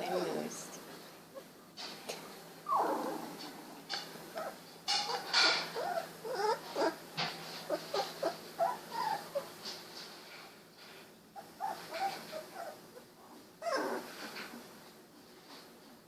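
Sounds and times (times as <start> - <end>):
rustle of movement: 1.8 - 16.0
puppies squeaking and whimpering: 2.6 - 3.4, 4.3 - 9.6, 11.4 - 14.4.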